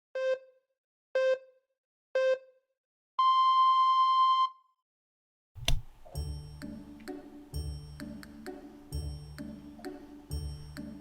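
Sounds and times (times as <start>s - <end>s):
electronic countdown beeps: 1.2s - 1.5s, 2.2s - 2.5s
music: 6.0s - 11.0s.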